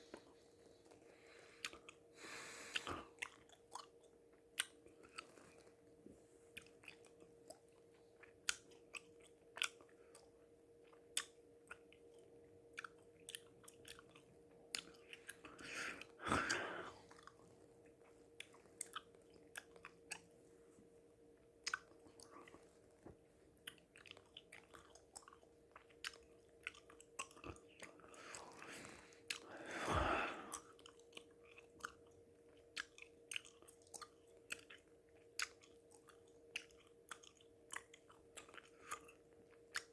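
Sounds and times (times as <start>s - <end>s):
gum chewing mouth clicks: 2.6s - 5.7s, 6.6s - 20.3s, 21.6s - 22.6s, 23.6s - 39.9s
heavy drawn-out breaths: 28.1s - 30.6s.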